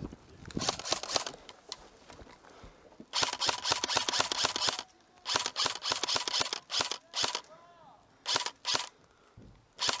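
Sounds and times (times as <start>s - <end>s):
airsoft rifle firing bursts: 0.6s - 1.3s, 3.1s - 7.5s, 8.2s - 8.9s, 9.8s - 10.0s.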